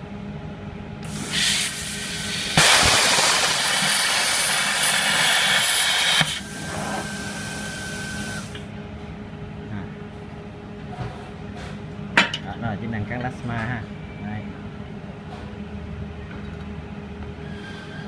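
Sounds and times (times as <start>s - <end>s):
compressed air hissing: 1.0s - 8.7s
plasma arc crack: 1.1s - 7.6s
plasma cutter hissing: 1.1s - 8.6s.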